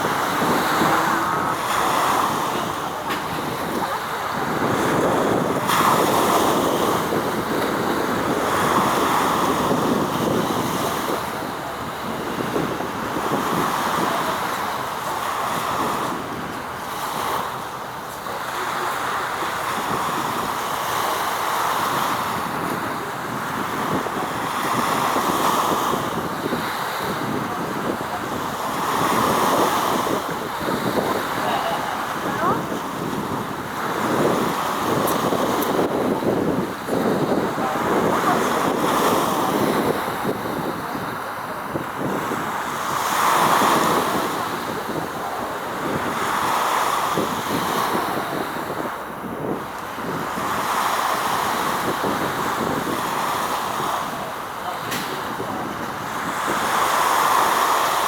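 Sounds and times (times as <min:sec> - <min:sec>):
water rushing: 0:00.0 - 0:58.0
wind: 0:00.0 - 0:58.0.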